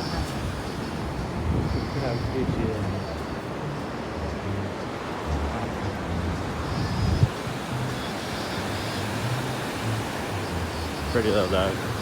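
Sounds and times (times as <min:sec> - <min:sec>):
ocean surf on beach: 0:04.8 - 0:12.0.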